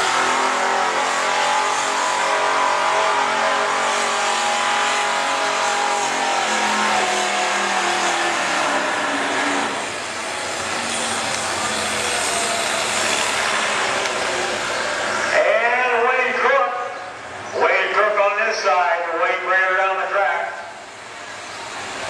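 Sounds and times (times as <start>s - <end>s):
tractor diesel engine under load: 0.0s - 22.0s.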